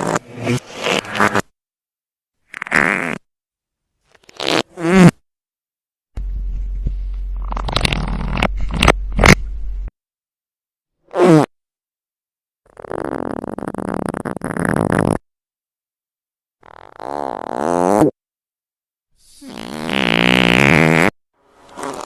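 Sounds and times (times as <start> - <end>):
fart sound effects: 4.3 - 5.2, 11.1 - 11.5, 12.8 - 15.2, 16.6 - 18.2, 19.4 - 22.0
steady low hum: 6.2 - 9.9.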